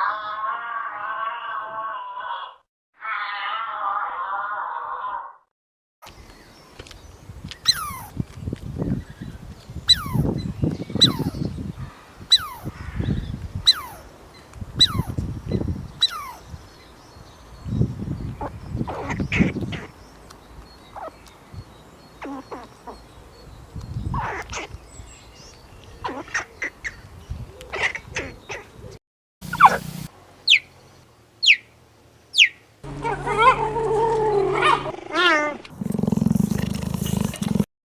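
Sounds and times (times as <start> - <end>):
high animal chirps: 7.6 - 8.1, 9.9 - 10.3, 11.0 - 11.4, 12.3 - 12.7, 14.8 - 15.2, 16.0 - 16.4, 29.4 - 30.7
animal squealing: 7.7 - 8.1, 16.0 - 16.4, 32.9 - 37.6
animal wailing call: 32.9 - 35.6
low raspy growl: 32.9 - 37.7.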